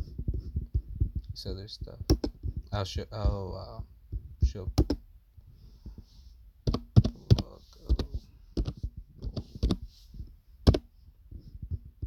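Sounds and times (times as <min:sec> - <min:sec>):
keyboard key clicks: 0:02.1 - 0:02.4, 0:04.8 - 0:05.0, 0:06.7 - 0:09.8.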